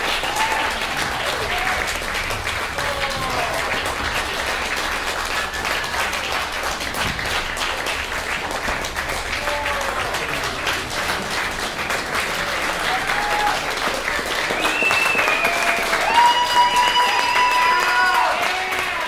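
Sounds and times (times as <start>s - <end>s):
faint cheers: 0.0s - 2.0s, 12.6s - 19.0s
audience applauding: 0.0s - 19.0s.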